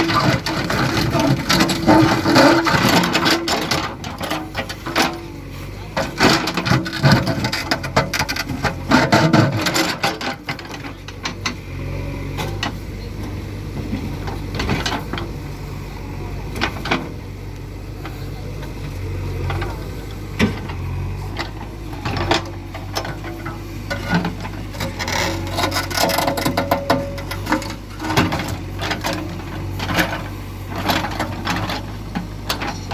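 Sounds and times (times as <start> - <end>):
metal and stone clanking: 0.0 - 5.3, 20.4 - 32.9
diesel engine running: 0.0 - 32.9.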